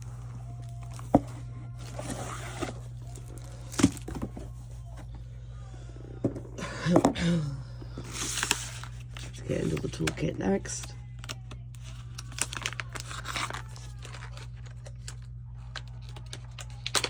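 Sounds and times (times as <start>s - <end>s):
steady low hum: 0.0s - 17.0s
packaging rustling: 8.0s - 17.0s.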